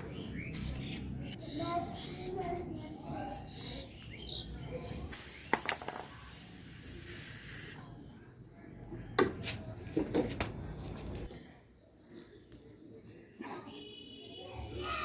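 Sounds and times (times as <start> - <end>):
air hissing out of tyre: 5.1 - 7.8.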